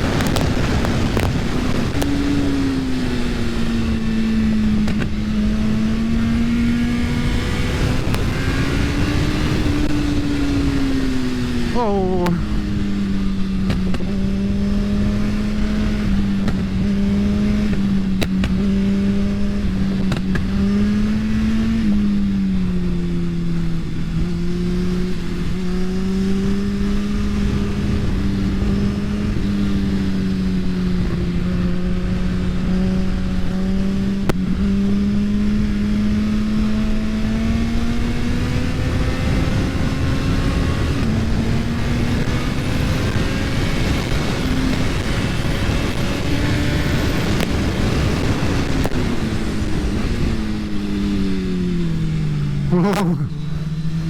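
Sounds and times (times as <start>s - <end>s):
wind rush: 0.0s - 18.7s, 37.2s - 52.2s
motorcycle engine at high revs: 0.0s - 54.0s.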